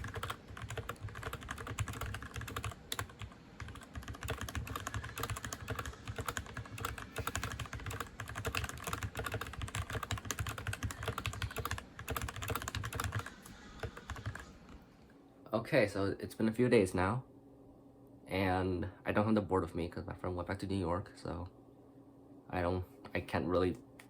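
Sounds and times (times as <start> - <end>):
mechanical keyboard typing: 0.0 - 14.5.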